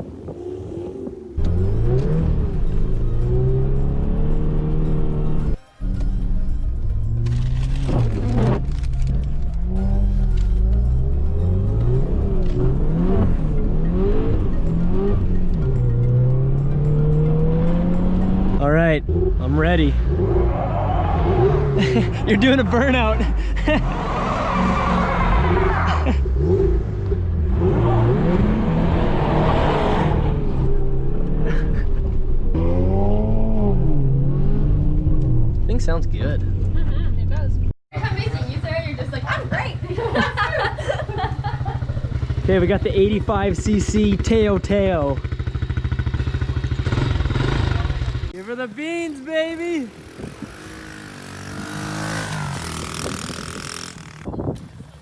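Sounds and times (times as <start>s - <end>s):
car engine revving: 0.1s - 36.8s, 45.7s - 54.3s
wheels spinning in snow: 49.1s - 55.0s.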